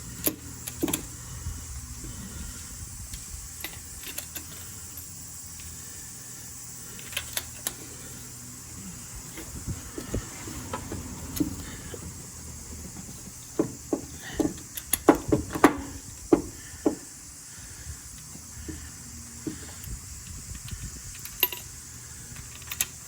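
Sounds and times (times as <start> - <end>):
hand tools clicking and knocking: 0.2 - 1.1, 3.1 - 5.7, 9.2 - 17.2.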